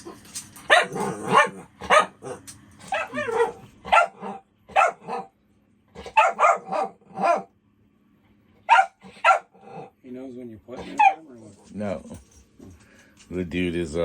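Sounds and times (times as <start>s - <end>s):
dog barking and yipping: 0.6s - 5.3s, 6.0s - 7.5s, 8.6s - 9.9s, 10.8s - 11.4s
dog whining bark: 0.6s - 5.4s, 6.0s - 7.5s, 8.6s - 9.9s, 10.8s - 11.3s.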